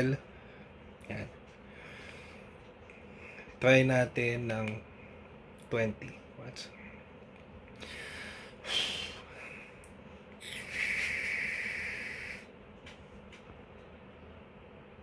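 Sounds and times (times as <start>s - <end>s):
vape airy hiss: 10.4s - 12.5s.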